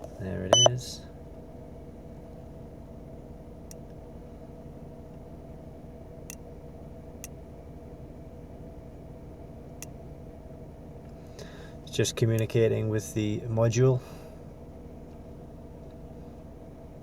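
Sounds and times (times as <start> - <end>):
scan tool button clicks: 0.6 - 0.8.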